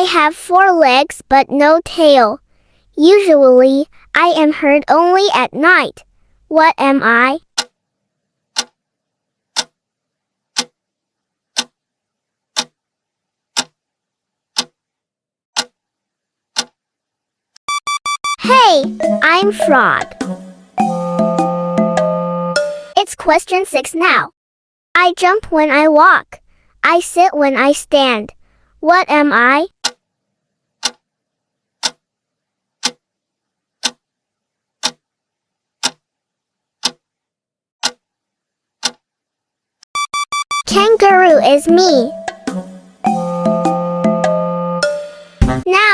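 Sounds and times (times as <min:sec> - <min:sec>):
clock ticking: 0:39.9 - 0:43.2.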